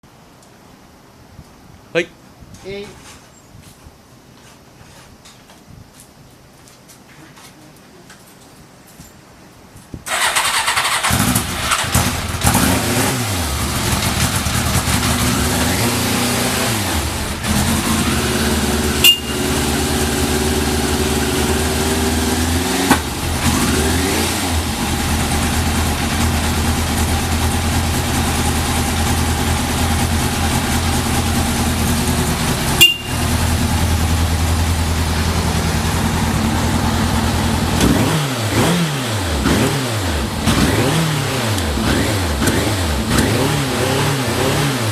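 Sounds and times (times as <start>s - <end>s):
motorcycle engine idling and revving: 10.1s - 44.9s.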